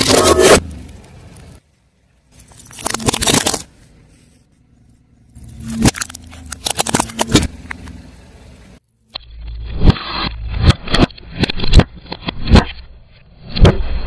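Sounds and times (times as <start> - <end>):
tyre crushing crunchy objects: 2.4 - 3.8.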